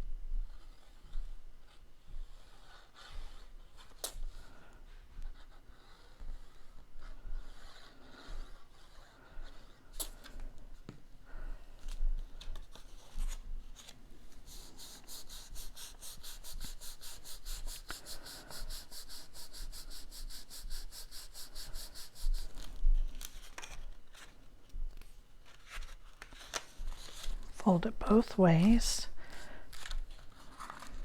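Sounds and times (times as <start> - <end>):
rubbing strokes on cardstock: 5.3 - 9.8, 12.7 - 23.3
cardstock rustling: 25.4 - 27.6, 29.3 - 31.0.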